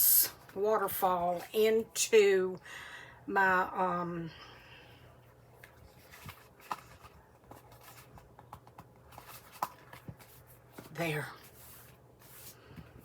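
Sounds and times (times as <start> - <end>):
paper rustling and tapping: 5.6 - 11.0.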